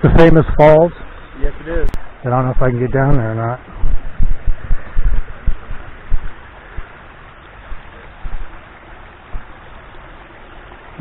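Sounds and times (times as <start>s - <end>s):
small waterfall rushing: 0.0s - 11.0s
low thumps: 1.8s - 7.0s.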